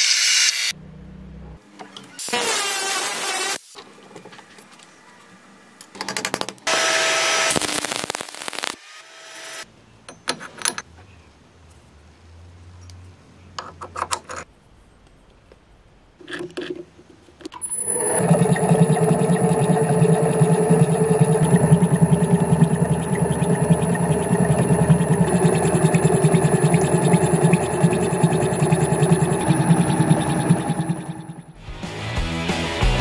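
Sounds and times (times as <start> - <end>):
power tool running: 6.7 - 9.6
machine motor running: 17.7 - 31.6.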